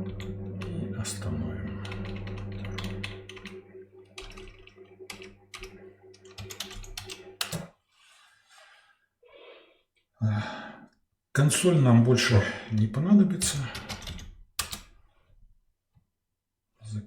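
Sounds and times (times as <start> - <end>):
roller blind motor humming: 0.0 - 6.5
computer keyboard typing: 1.8 - 7.6, 13.7 - 14.8.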